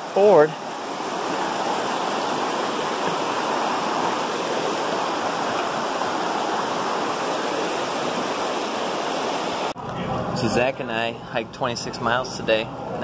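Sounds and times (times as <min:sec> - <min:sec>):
river water rushing: 0:00.0 - 0:09.8.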